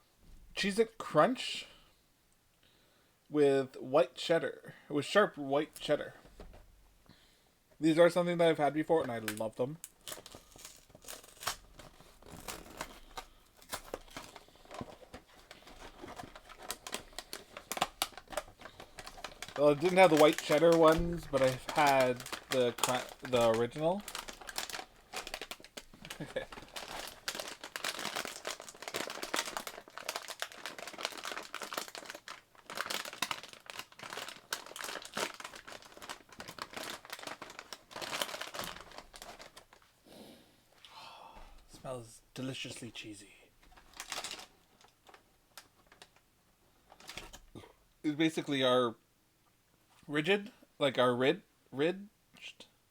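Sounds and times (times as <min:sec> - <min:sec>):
snack packaging crinkling: 0:09.0 - 0:39.8, 0:43.8 - 0:46.2, 0:46.9 - 0:47.5.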